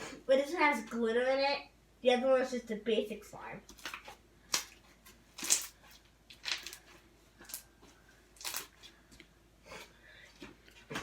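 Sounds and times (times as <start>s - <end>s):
slime squelching by hand: 3.7s - 9.1s.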